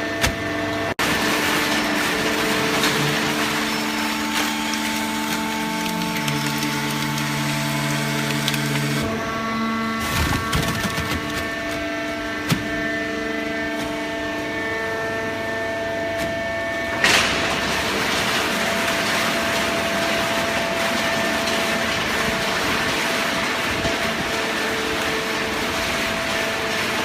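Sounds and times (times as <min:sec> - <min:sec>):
baling press humming: 0:01.0 - 0:13.2.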